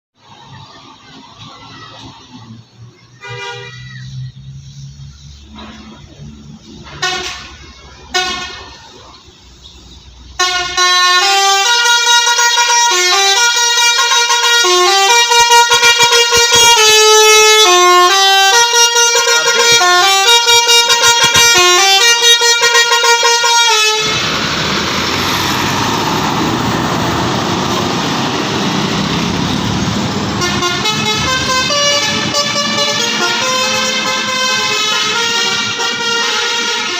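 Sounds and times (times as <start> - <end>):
multi-tone bus horn melody: 3.2 - 4.1, 5.5 - 9.0, 10.3 - 36.9
loud rushing noise: 23.6 - 36.9.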